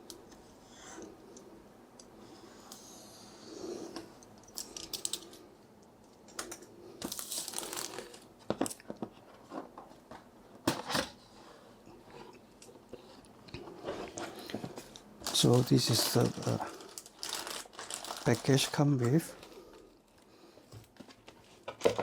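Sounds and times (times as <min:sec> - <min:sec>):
packaging rustling and tearing: 0:07.0 - 0:08.3, 0:14.1 - 0:20.2.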